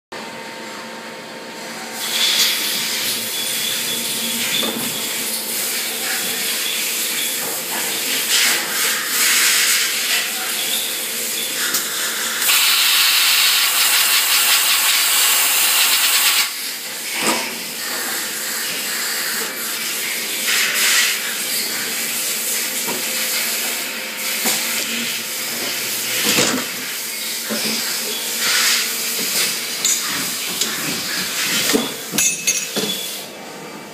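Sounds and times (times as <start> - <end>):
machinery hissing: 11.8 - 16.6.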